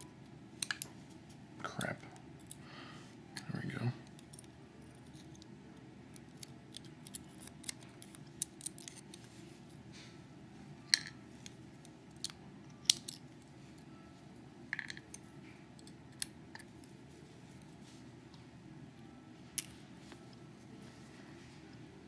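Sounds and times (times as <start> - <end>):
small metal parts clicking: 6.1 - 9.2.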